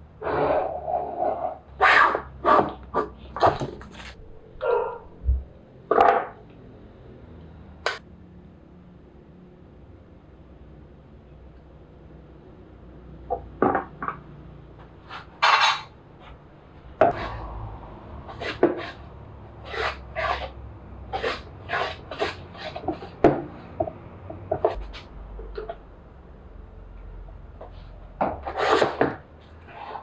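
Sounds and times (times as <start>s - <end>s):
hand tool rasping wood: 19.6s - 20.5s, 21.1s - 23.2s, 28.4s - 29.1s.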